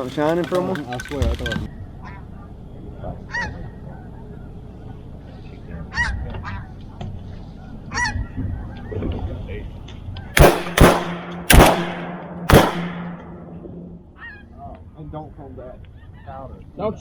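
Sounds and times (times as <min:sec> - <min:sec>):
geese honking: 0:03.3 - 0:04.1
shotgun shots: 0:10.4 - 0:13.8.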